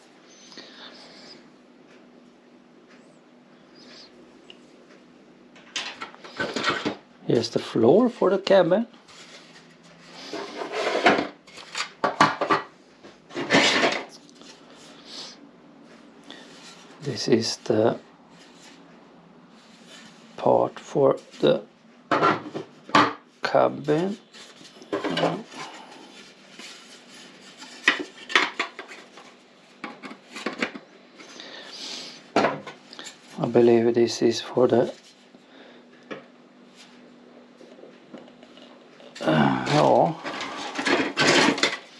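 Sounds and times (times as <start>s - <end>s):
plastic parts clicking and clattering: 5.6s - 7.0s, 26.7s - 30.8s, 39.2s - 41.9s
plastic parts rubbing: 9.0s - 12.7s, 23.9s - 31.4s, 38.6s - 41.9s
plastic parts clattering on table: 13.3s - 14.1s, 39.7s - 41.9s.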